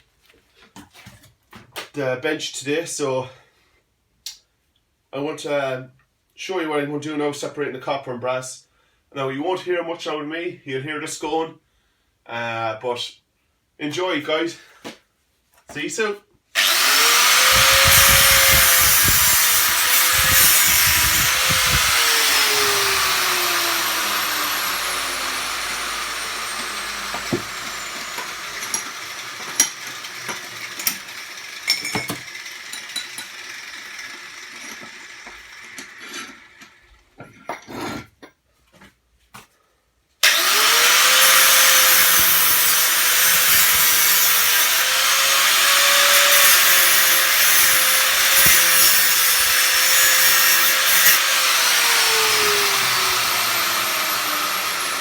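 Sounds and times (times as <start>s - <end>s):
electric power tool cutting metal: 16.6s - 36.8s, 40.2s - 55.0s.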